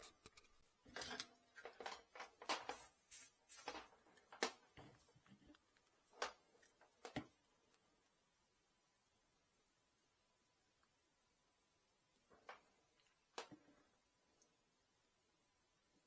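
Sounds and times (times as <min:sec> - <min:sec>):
clicks and rustles of handling wires: 0:00.0 - 0:08.2, 0:12.3 - 0:13.9.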